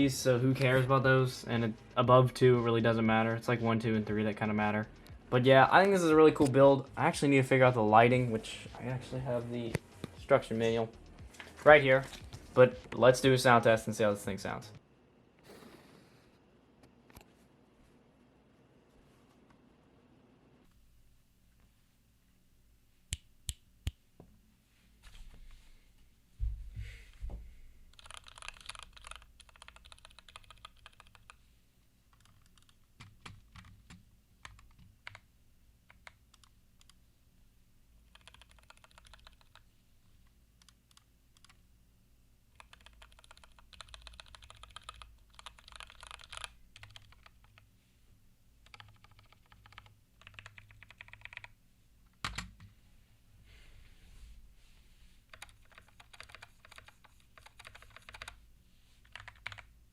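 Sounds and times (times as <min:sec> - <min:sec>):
mechanical keyboard typing: 0:27.9 - 0:31.4, 0:32.1 - 0:35.2, 0:35.9 - 0:37.0, 0:38.1 - 0:39.6, 0:40.6 - 0:41.6, 0:42.6 - 0:47.6, 0:48.6 - 0:51.6, 0:52.2 - 0:52.7, 0:55.3 - 0:58.4, 0:59.0 - 0:59.7.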